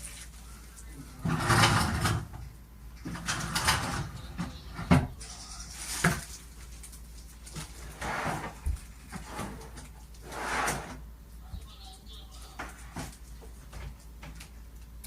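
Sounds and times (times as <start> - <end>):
wooden cabinet doors scraping: 1.2 - 2.4, 7.8 - 11.0.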